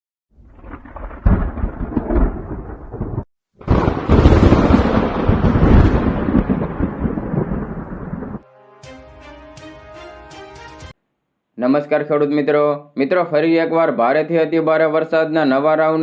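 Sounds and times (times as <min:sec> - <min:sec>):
thunder rumbling: 0:00.4 - 0:08.4.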